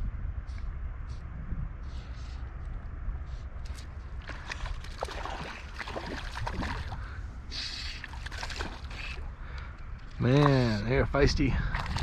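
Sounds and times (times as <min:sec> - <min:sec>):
flowing water rumble: 0:03.3 - 0:12.0
river water splashing: 0:03.6 - 0:10.9, 0:11.7 - 0:12.0.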